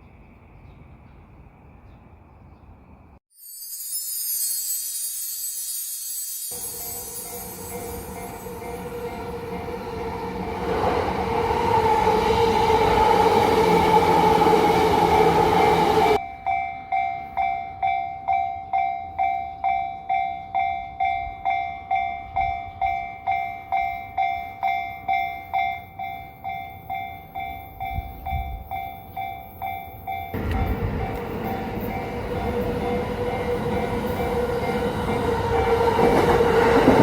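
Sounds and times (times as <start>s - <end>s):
level-crossing warning bell: 3.5s - 10.4s, 14.8s - 36.9s
train running past: 6.5s - 16.2s, 23.3s - 37.0s.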